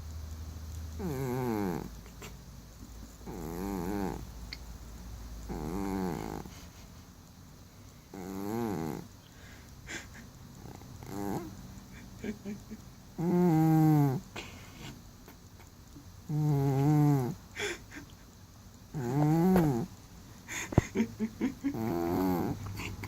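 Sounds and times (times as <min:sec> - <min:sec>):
cat snoring: 0:01.0 - 0:02.0, 0:03.2 - 0:04.3, 0:05.5 - 0:06.6, 0:08.1 - 0:09.1, 0:10.6 - 0:11.6, 0:13.2 - 0:14.3, 0:16.3 - 0:17.4, 0:18.9 - 0:19.9, 0:21.7 - 0:22.7.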